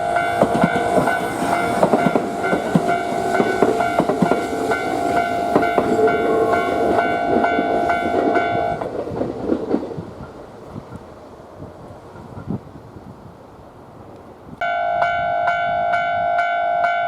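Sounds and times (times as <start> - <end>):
train wheels clacking over rail joints: 0.0 - 11.1.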